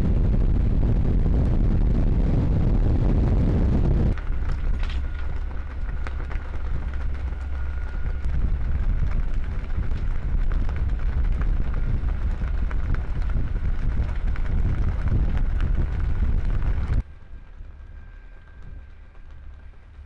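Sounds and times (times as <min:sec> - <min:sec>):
faint steady whine: 0:00.0 - 0:20.0
steady low rumble: 0:00.0 - 0:20.0
wind buffeting microphone: 0:00.0 - 0:20.0.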